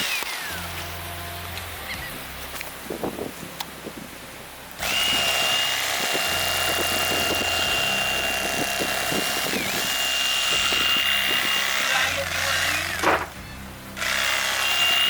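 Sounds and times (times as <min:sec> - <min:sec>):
motor whining: 0:04.8 - 0:15.0
loud rushing noise: 0:12.9 - 0:13.5.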